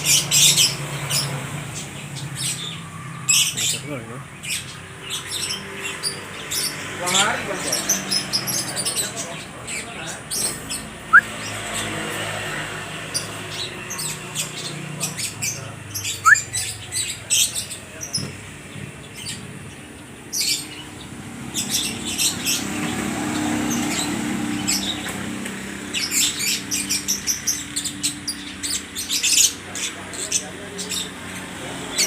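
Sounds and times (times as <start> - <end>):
lovebirds chattering: 0.0 - 32.0
rising bird whistles: 11.1 - 11.4, 16.1 - 16.6.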